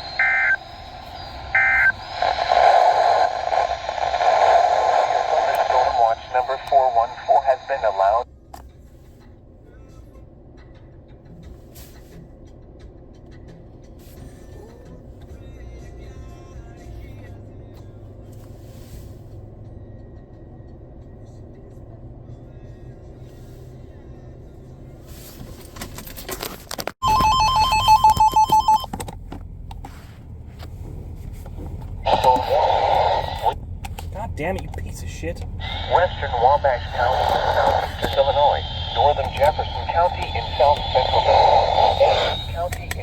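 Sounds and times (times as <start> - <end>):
electronic ringing tone warbling: 0.0 - 3.4, 27.0 - 28.9
vehicle road and engine rumble: 5.7 - 43.0.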